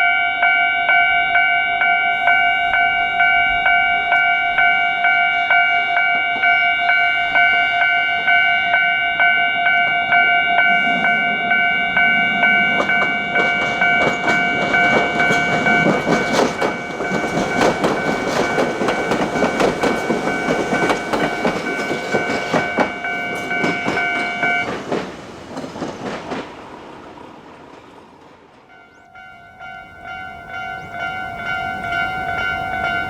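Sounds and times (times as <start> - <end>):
level crossing warning bell ringing: 0.0 - 24.8, 28.7 - 33.0
train wheels clattering over rail joints: 12.0 - 28.7.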